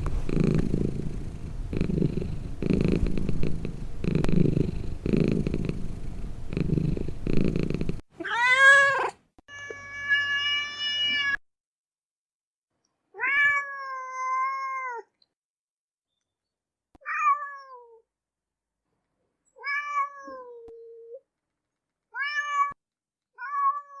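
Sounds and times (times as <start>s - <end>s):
cat purring: 0.0s - 8.0s
cat meowing: 8.2s - 11.4s, 13.2s - 15.1s.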